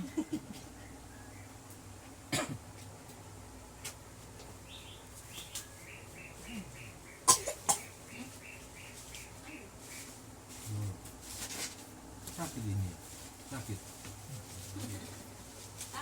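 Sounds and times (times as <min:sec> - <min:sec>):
toddler coughing: 0:02.3 - 0:02.6, 0:07.3 - 0:07.9.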